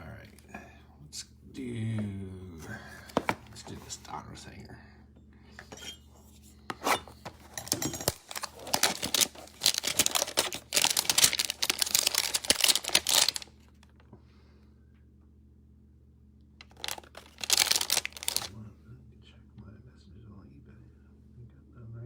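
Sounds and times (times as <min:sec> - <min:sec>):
packaging tearing and crinkling: 0:07.2 - 0:13.6, 0:16.6 - 0:18.5.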